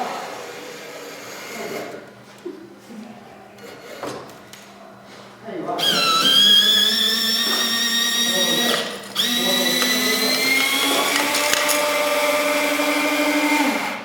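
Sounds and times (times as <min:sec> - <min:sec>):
small electric motor whining: 0:05.8 - 0:14.0.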